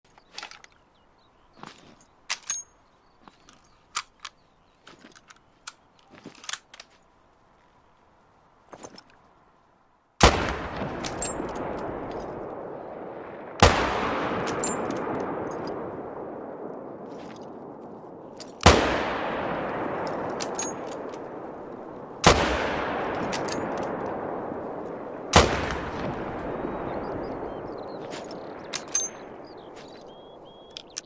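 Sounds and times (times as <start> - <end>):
rifle bolt clicks and clacks: 2.3 - 2.6, 5.0 - 6.9.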